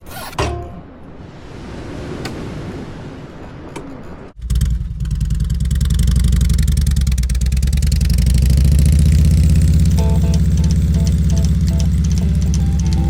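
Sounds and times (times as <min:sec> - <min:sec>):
motorcycle engine idling: 0:04.4 - 0:13.0.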